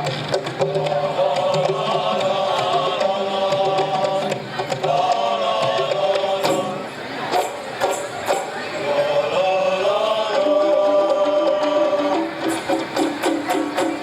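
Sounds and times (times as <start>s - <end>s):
hand percussion strokes: 0.0s - 8.8s, 10.8s - 14.0s
men singing together: 1.0s - 6.8s, 8.8s - 12.2s.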